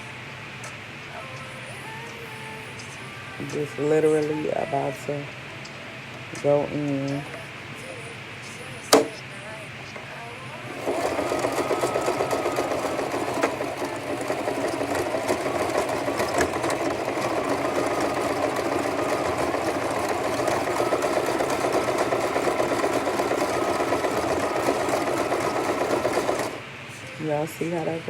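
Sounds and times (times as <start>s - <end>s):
sewing machine running: 10.5s - 26.7s.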